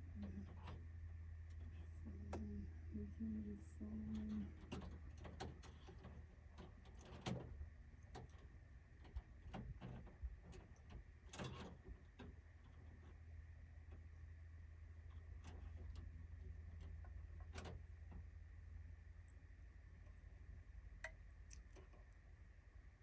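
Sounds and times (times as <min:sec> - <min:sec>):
low steady hum: 0:00.0 - 0:23.0
clicks and knocks of handling: 0:04.2 - 0:13.2, 0:15.1 - 0:18.3.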